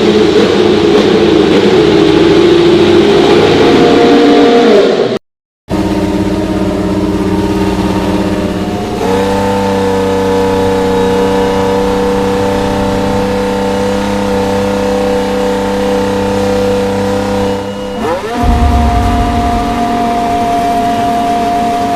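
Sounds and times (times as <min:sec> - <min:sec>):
racing car engine running: 0:00.0 - 0:21.9.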